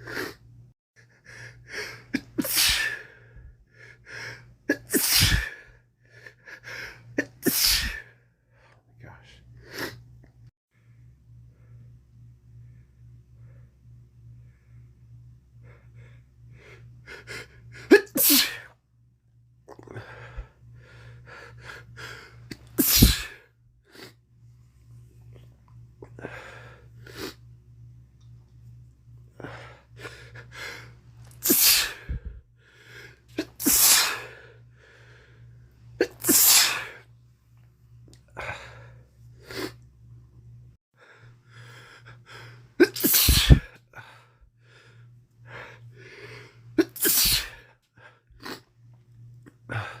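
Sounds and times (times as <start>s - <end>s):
man sneezing: 2.2s - 3.0s, 4.7s - 5.6s, 7.2s - 8.0s, 17.9s - 18.8s, 22.6s - 23.4s, 31.4s - 32.1s, 33.4s - 34.3s, 36.0s - 37.0s, 42.8s - 43.8s, 46.8s - 47.6s.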